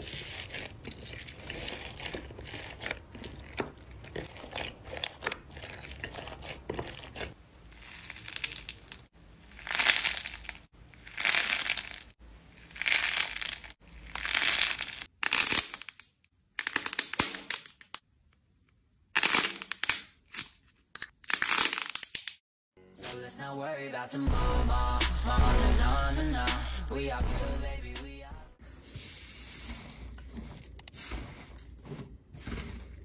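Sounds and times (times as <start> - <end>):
slime crackling and crunching: 0.0 - 18.0, 19.1 - 22.4.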